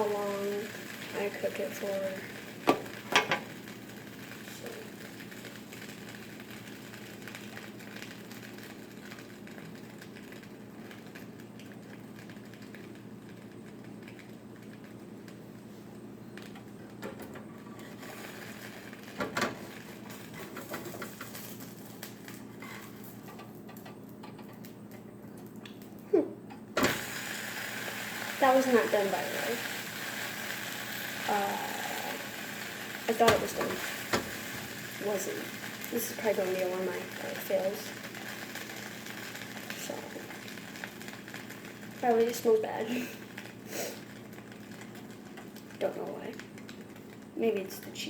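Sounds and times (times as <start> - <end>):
sandwich sizzling in a pan: 0.0 - 24.8, 26.8 - 48.0.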